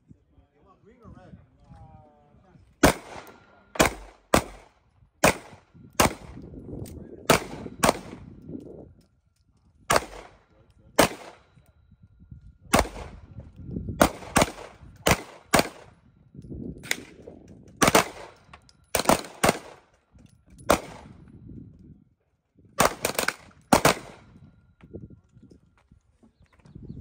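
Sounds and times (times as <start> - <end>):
gunshots with echo: 2.8 - 6.4, 7.2 - 8.3, 9.9 - 11.5, 12.7 - 13.3, 14.0 - 16.0, 17.8 - 19.9, 20.7 - 21.2, 22.8 - 24.3.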